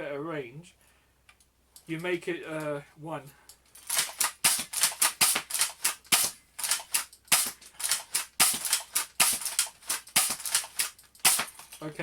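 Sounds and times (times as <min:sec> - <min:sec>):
toy shotgun pumping and firing: 0:03.8 - 0:11.7.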